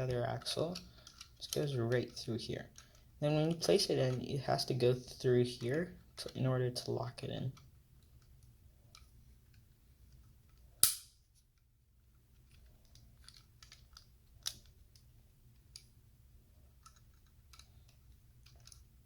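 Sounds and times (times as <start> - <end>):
plastic pieces clicking together: 0.1 - 4.2, 12.4 - 15.9, 16.8 - 19.0
plastic piece snapping: 10.8 - 11.1.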